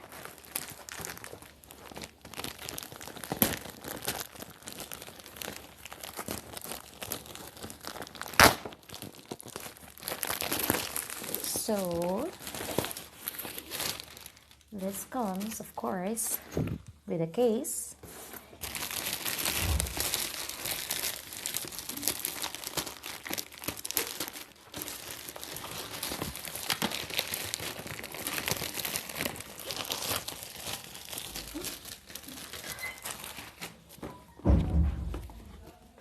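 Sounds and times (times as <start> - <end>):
packaging tearing: 0.0 - 15.6, 18.0 - 34.0
packaging crinkling: 0.0 - 17.0, 18.0 - 34.2
dull thump: 34.4 - 35.6.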